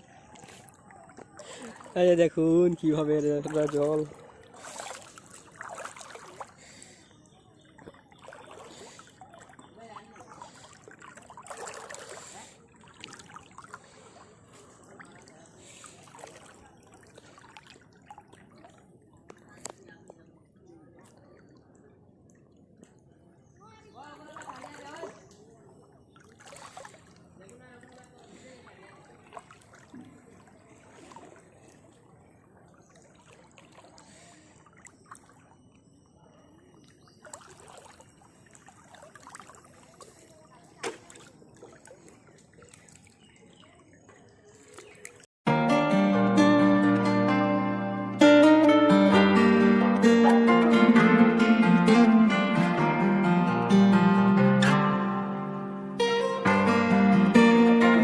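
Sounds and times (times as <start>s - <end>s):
floodwater sloshing and trickling: 0.0s - 45.3s.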